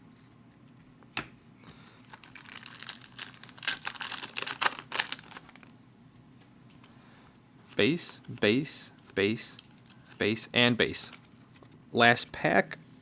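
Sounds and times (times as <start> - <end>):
wrapper crinkling and tearing: 2.0 - 5.7.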